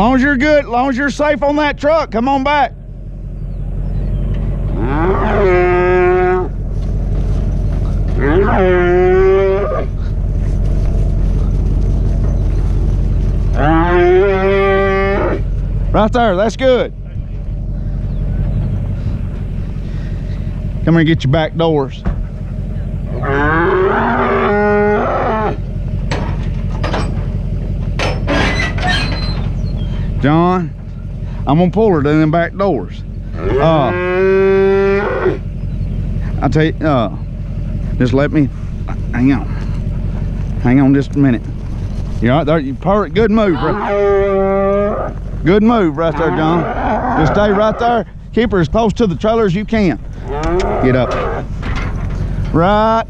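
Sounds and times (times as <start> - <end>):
low engine hum: 0.0 - 53.0
cow mooing: 4.7 - 6.7, 7.3 - 11.0, 13.4 - 15.6, 23.0 - 25.7, 33.2 - 35.6, 42.9 - 48.1, 50.1 - 53.0
sharp knocks and rattles: 6.6 - 8.4, 25.7 - 29.8, 48.7 - 53.0.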